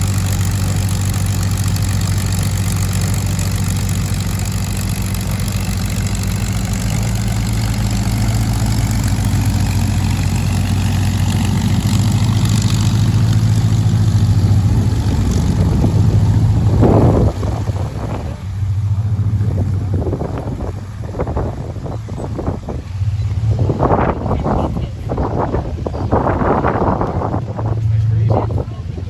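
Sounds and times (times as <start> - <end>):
aircraft engines running: 0.0 - 29.0.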